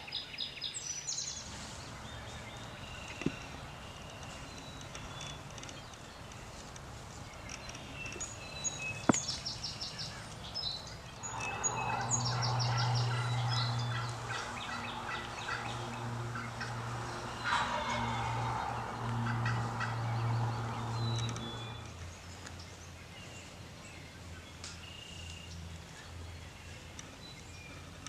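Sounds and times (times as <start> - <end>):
steady low hum: 1.4 - 23.5
turkey gobbling: 11.2 - 20.8.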